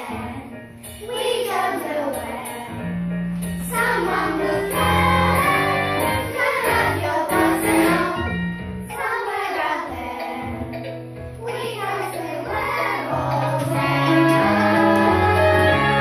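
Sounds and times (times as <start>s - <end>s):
children's choir singing: 0.0s - 2.9s, 3.6s - 16.0s
backing track with bass line: 10.0s - 16.0s.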